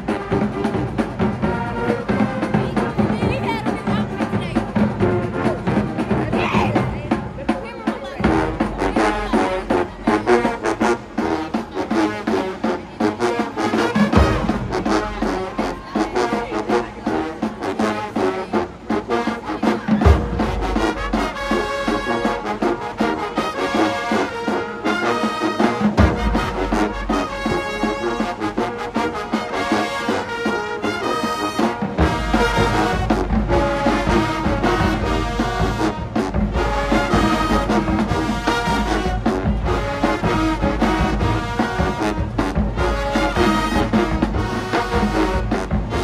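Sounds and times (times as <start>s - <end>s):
marching band brass playing: 0.0s - 46.0s
percussion beat: 0.0s - 46.0s
heavy low drum hit: 20.0s - 21.7s.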